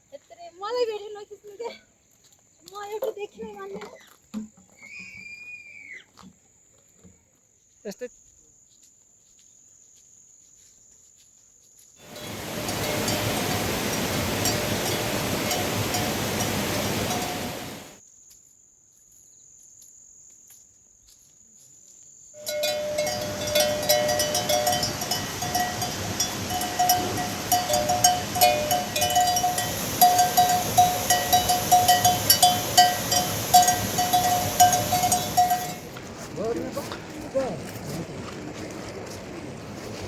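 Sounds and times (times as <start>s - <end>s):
livestock bell clanking: 12.0s - 17.9s, 22.4s - 37.9s
steady rushing noise: 12.0s - 18.0s, 22.4s - 40.0s
thin high whine: 12.0s - 18.0s, 22.4s - 36.0s.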